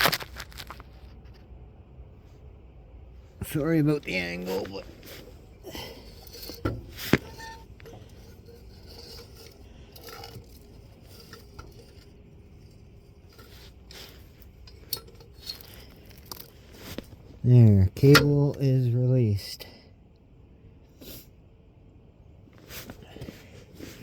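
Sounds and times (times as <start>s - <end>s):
metal cable clinking and scraping: 3.3s - 18.8s.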